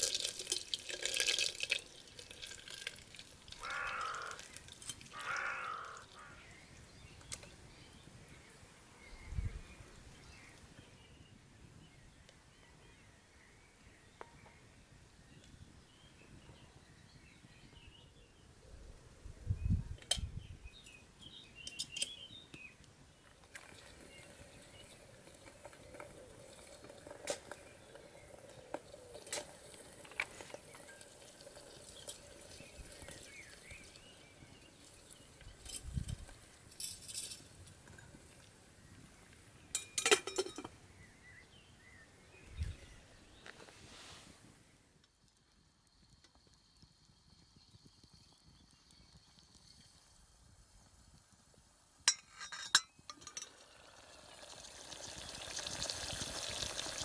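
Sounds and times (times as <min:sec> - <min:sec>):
metal cookware clinking: 0:39.7 - 0:40.7, 0:52.1 - 0:53.6.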